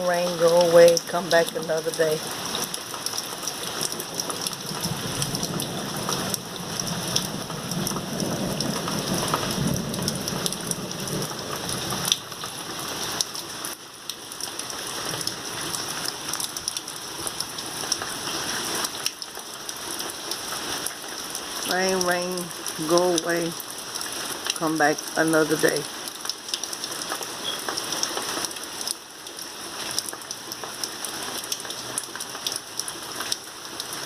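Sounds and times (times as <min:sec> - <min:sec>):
heavy rain pattering: 0:00.0 - 0:34.0.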